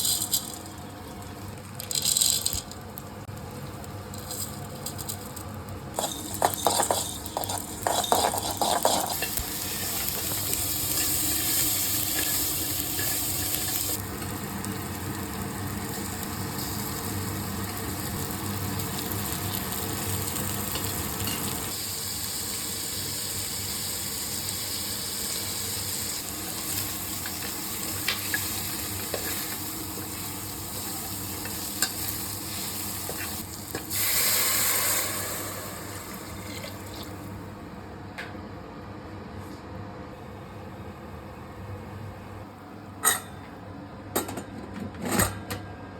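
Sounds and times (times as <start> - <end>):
utensil clinking against pan: 6.0 - 9.3
food sizzling in hot oil: 6.0 - 37.3.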